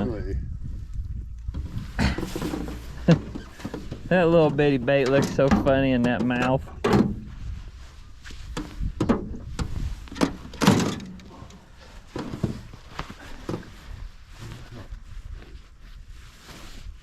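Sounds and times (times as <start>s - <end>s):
knocks and thumps in boat: 1.5s - 7.5s, 8.4s - 14.0s.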